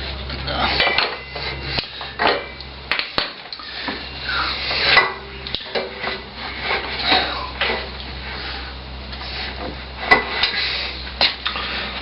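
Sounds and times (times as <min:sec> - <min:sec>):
metal tools clinking on metal: 0:00.4 - 0:04.2.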